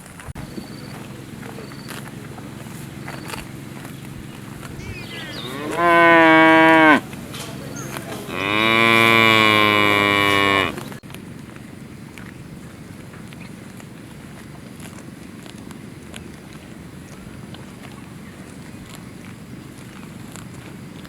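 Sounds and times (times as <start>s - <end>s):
cow mooing: 1.2s - 11.0s.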